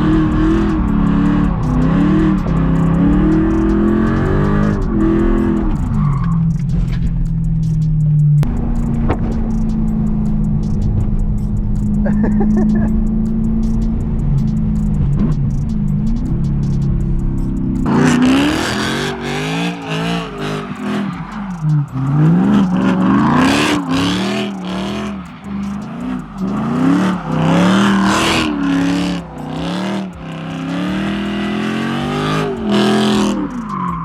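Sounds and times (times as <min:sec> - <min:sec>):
car engine revving hard: 0:00.0 - 0:34.0.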